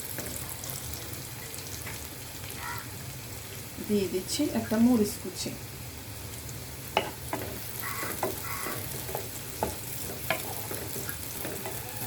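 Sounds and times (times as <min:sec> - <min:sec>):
garlic sizzling in butter: 0:00.0 - 0:12.0
utensil clicking against pan: 0:07.0 - 0:12.0.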